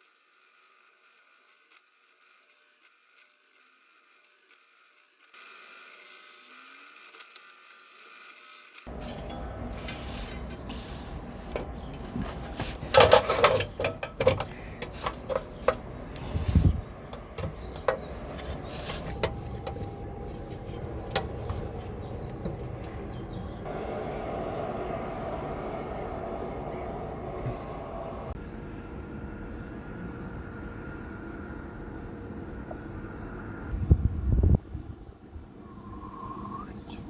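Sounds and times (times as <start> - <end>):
steady mid-pitched noise: 8.9 - 33.8
steady low hum: 8.9 - 37.0.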